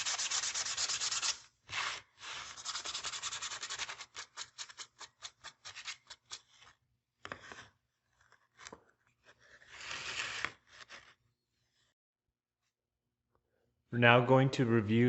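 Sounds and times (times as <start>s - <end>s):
sandpaper rubbing on wood: 0.0s - 5.1s.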